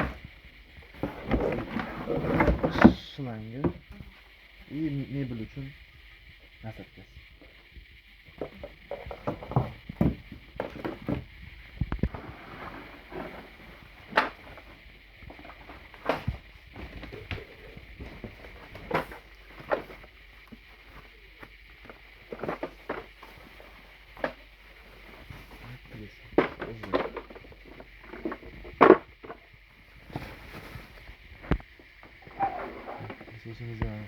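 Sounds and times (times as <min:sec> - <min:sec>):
plastic parts clicking and knocking: 0:08.4 - 0:12.2, 0:13.3 - 0:24.6, 0:26.3 - 0:29.6.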